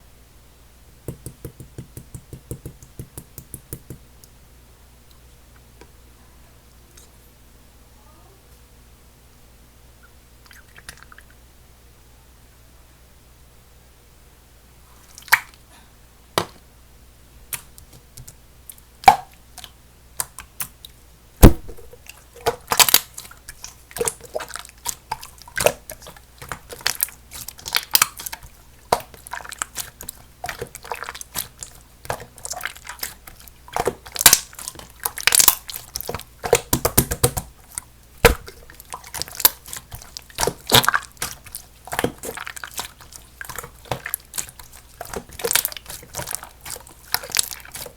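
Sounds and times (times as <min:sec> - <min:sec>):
slime being squished by hand: 0:15.0 - 0:15.6, 0:19.0 - 0:47.9.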